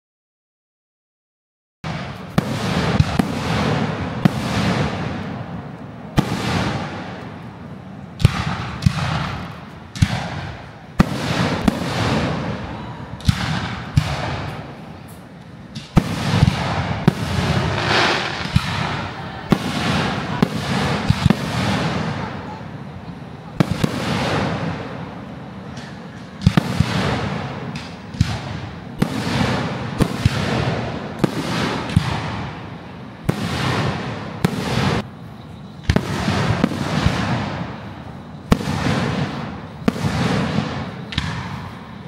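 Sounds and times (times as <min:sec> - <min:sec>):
fireworks crackling: 0:01.9 - 0:42.0
firework shells bursting: 0:08.3 - 0:22.3.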